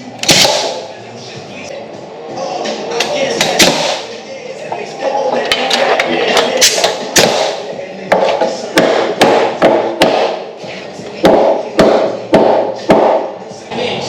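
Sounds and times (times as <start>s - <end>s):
hammer striking wood: 0.2s - 0.8s, 3.4s - 4.0s, 6.4s - 10.4s, 11.2s - 13.3s.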